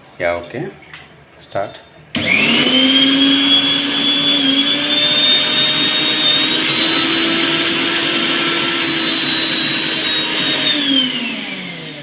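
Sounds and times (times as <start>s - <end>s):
mixer grinder motor whirring: 2.1s - 12.0s.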